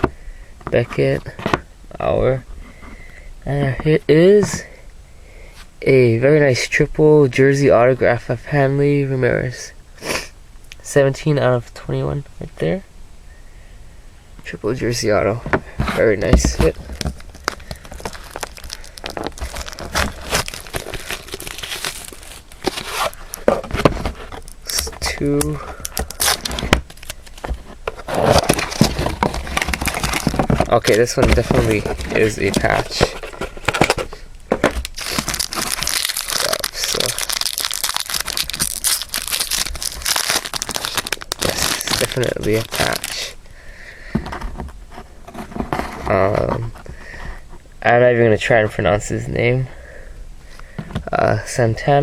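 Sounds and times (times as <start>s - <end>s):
plastic wrapping crinkling: 15.8s - 43.4s.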